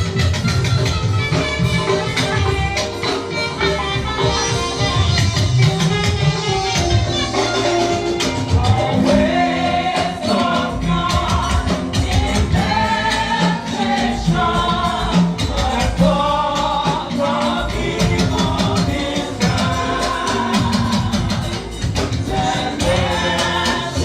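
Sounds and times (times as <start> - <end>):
instrumental accompaniment: 0.0 - 24.0
steady percussion beat: 0.0 - 24.0
group singing a hymn: 8.3 - 24.0.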